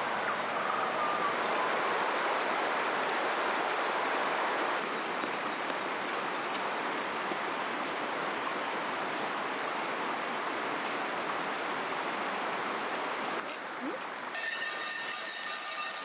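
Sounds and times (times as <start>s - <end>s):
river water rushing: 0.0s - 4.9s.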